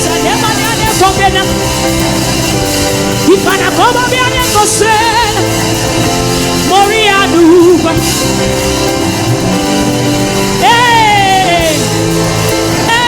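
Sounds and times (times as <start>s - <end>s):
woman singing with vibrato: 0.0s - 2.1s, 3.2s - 8.3s, 10.5s - 13.0s
band playing held chords: 0.0s - 13.0s.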